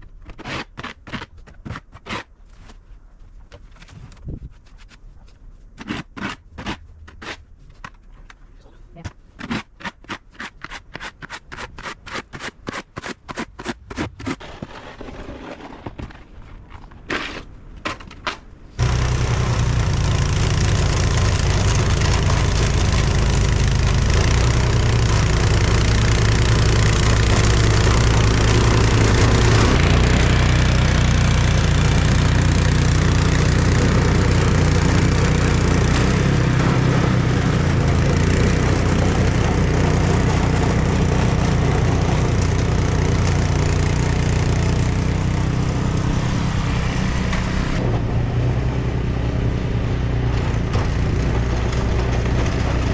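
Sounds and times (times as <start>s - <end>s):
vehicle engine rumbling: 18.7s - 52.9s.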